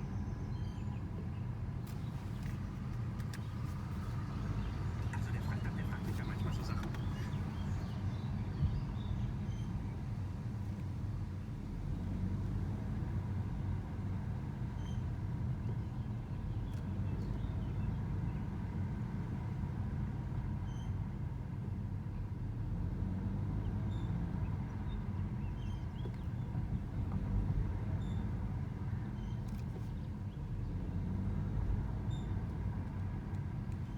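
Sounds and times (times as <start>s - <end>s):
car driving slowly: 0.0s - 33.9s.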